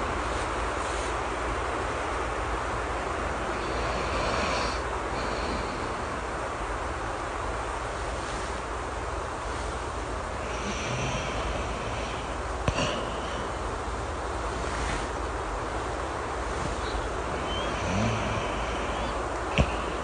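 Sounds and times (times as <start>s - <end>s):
steady rain hiss: 0.0s - 20.0s
person snoring softly: 3.4s - 6.3s, 10.4s - 13.7s, 16.5s - 20.0s.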